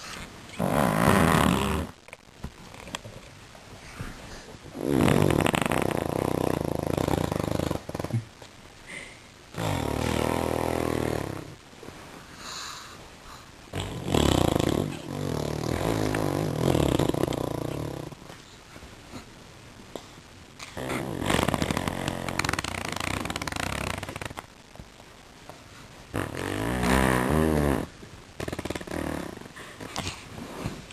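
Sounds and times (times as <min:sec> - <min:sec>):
baby blowing into cushion: 0:00.6 - 0:01.9, 0:26.2 - 0:29.4.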